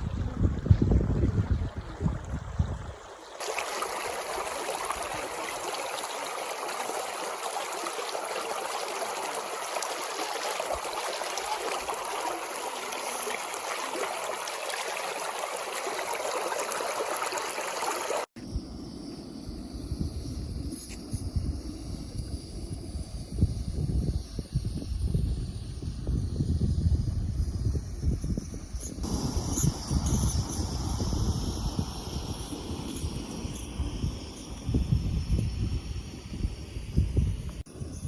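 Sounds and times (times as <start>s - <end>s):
wind rumble on microphone: 0.0s - 5.7s, 18.4s - 38.0s
stream water rushing: 3.1s - 18.3s.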